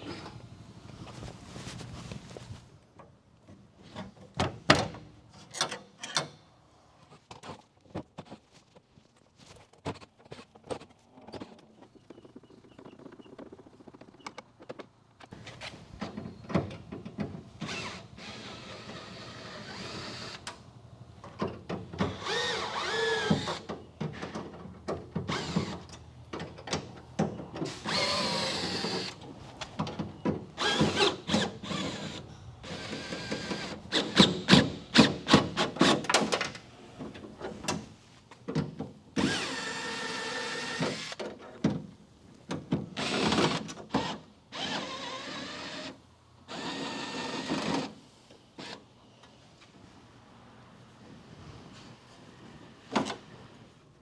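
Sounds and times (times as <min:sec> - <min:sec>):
power tool working on metal: 0:22.1 - 0:23.7, 0:27.7 - 0:29.2.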